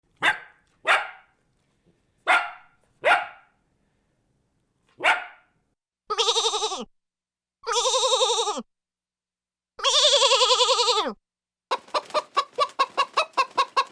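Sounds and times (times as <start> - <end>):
dog barking: 0.2 - 1.4, 2.2 - 3.6, 5.0 - 5.6
sheep or goat bleating: 6.1 - 6.9, 7.6 - 8.7, 9.8 - 11.2.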